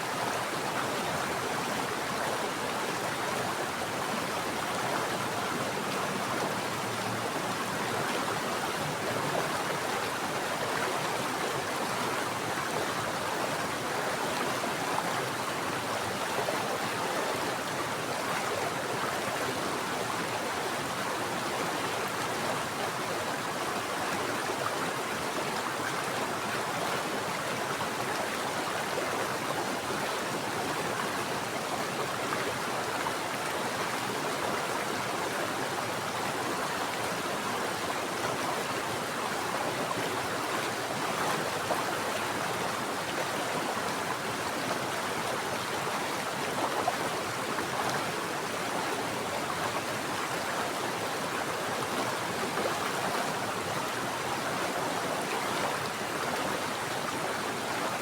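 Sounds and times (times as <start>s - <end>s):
stream rushing over rocks: 0.0s - 58.0s.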